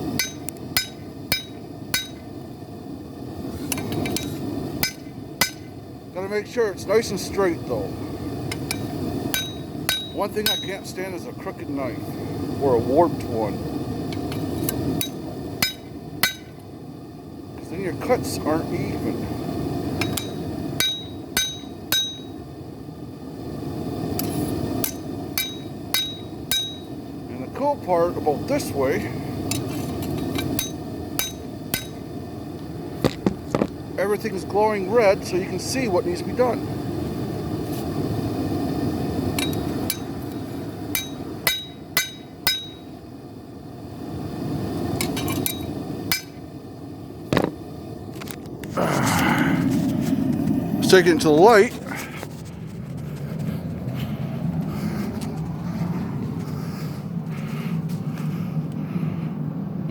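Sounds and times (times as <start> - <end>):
steady low rumble: 0.0 - 59.9
hammer blows on anvil: 0.2 - 2.3, 3.7 - 5.8, 8.6 - 10.8, 15.0 - 16.6, 20.0 - 22.3, 24.8 - 26.9, 30.4 - 32.0, 40.9 - 42.9.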